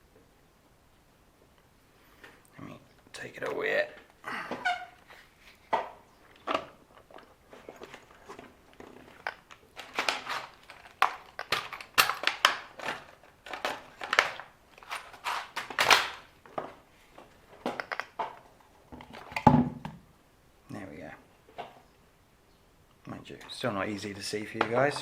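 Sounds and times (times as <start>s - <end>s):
plastic parts clicking and rattling: 6.3s - 16.7s, 17.6s - 19.5s.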